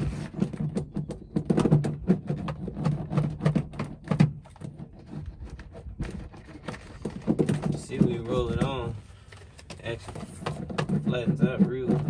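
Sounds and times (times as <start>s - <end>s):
hand roller rolling over foil mat: 0.0s - 12.0s.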